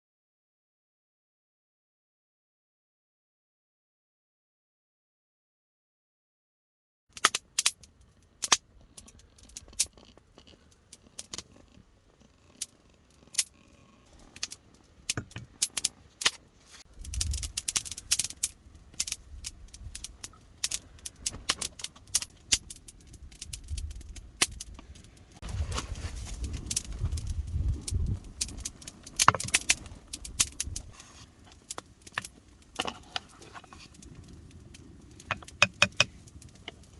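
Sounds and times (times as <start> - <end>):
wood fire crackling: 7.1 - 36.9.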